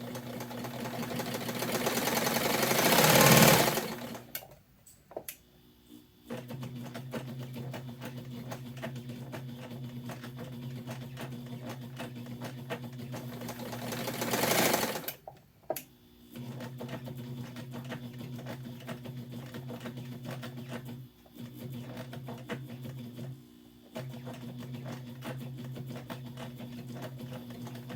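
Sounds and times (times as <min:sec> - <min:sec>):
sewing machine stitching: 0:00.0 - 0:04.3, 0:06.3 - 0:15.2.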